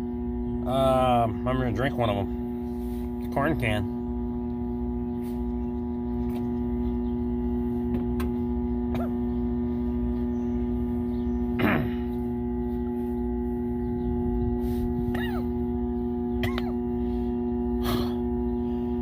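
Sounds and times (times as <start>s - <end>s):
steady tonal hum: 0.0s - 19.0s.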